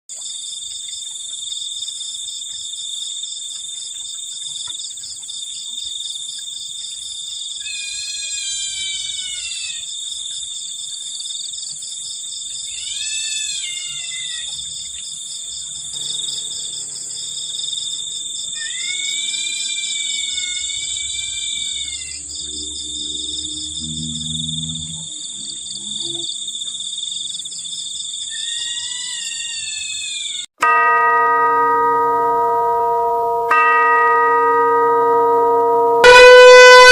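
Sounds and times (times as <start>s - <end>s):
insect chorus chirring: 0.2s - 30.5s
rising and falling pitched calls: 18.5s - 22.3s.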